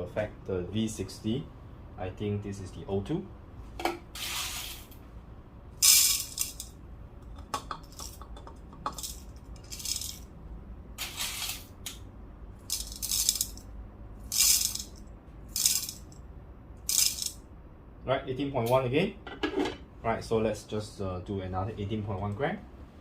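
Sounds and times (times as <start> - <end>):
coffee beans rattling into cup: 5.8 - 6.7, 7.5 - 10.2, 12.6 - 13.6, 14.3 - 16.1, 16.9 - 17.4.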